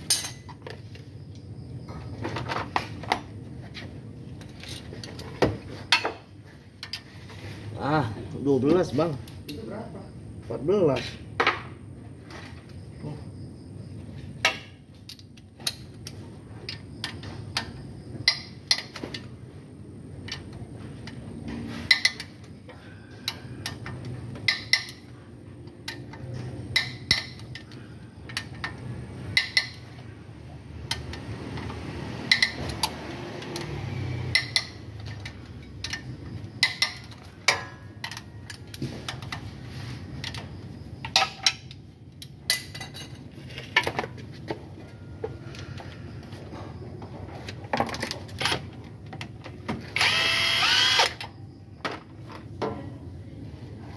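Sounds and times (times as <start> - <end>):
metal hand tools clinking: 0.0 - 0.5.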